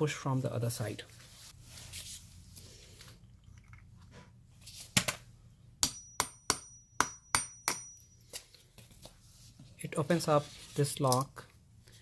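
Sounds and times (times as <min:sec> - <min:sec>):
hammer tapping on metal: 0:05.8 - 0:08.1.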